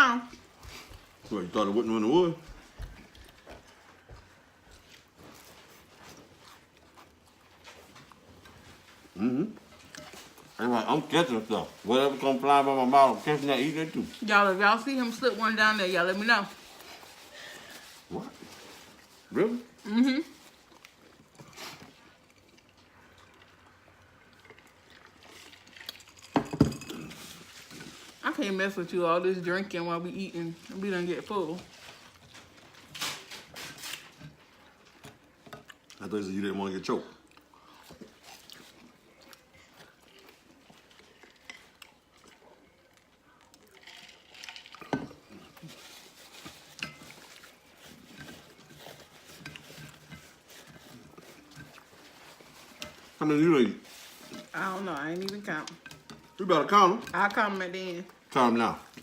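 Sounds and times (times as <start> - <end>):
faint eating sounds: 0.0 - 59.0
people chewing food: 0.0 - 59.0
slurping and gulping a drink: 16.5 - 28.2, 30.6 - 56.4.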